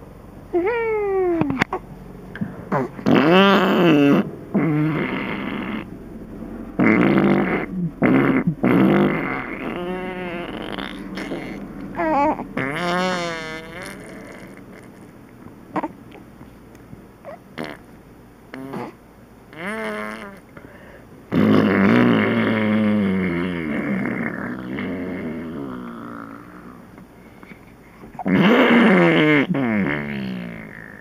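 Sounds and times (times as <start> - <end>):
wobbling mouth sound effects: 2.7 - 5.9, 6.8 - 16.3, 17.6 - 17.9, 18.5 - 20.4, 28.2 - 31.0.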